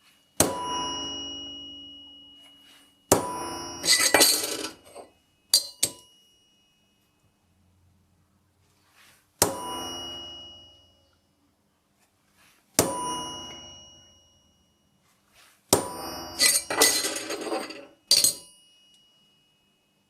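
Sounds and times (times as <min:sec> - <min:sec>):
hammer striking punch on metal: 0:00.4 - 0:01.3, 0:03.1 - 0:04.0, 0:09.4 - 0:10.4, 0:12.8 - 0:13.7, 0:15.7 - 0:16.7.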